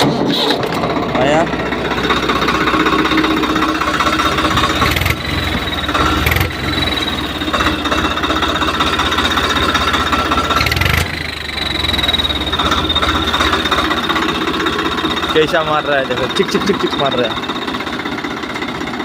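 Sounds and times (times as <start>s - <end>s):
tractor diesel engine chugging: 0.0s - 19.0s
high exhaust whistle: 10.2s - 15.2s.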